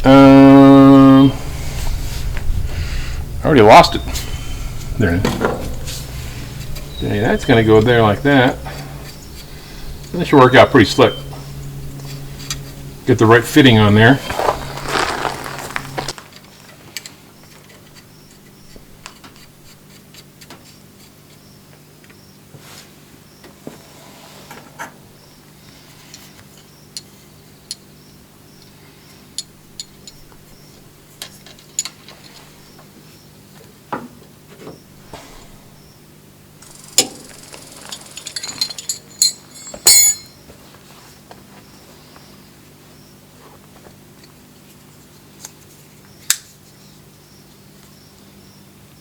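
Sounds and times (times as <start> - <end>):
steady low hum: 0.0 - 16.6, 34.9 - 40.4
small metal parts clinking: 36.7 - 40.4.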